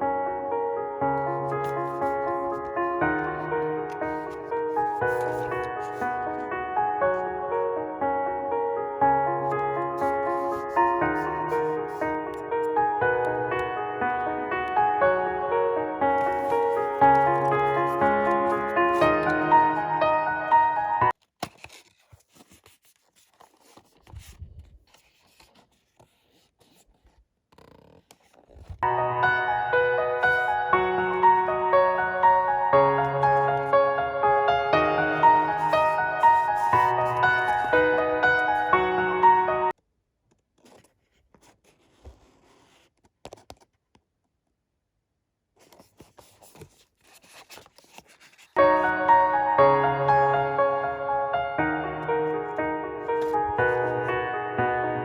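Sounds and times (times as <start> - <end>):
piano background music: 0.0 - 21.2, 28.8 - 39.8, 48.6 - 55.0
packaging clicks and rustling: 3.9 - 6.5, 16.2 - 19.7, 21.1 - 28.8, 35.3 - 38.7, 45.6 - 48.6.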